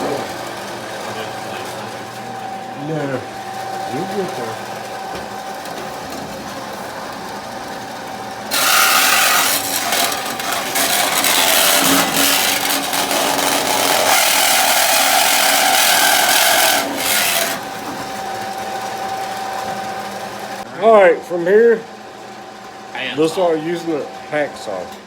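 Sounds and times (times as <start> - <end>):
power saw humming: 0.0 - 20.7
saw cutting metal plate: 3.8 - 4.9, 8.4 - 18.2.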